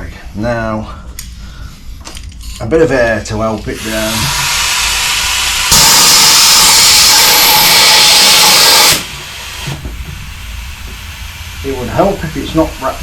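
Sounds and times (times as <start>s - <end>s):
compressed air hissing: 3.4s - 13.0s.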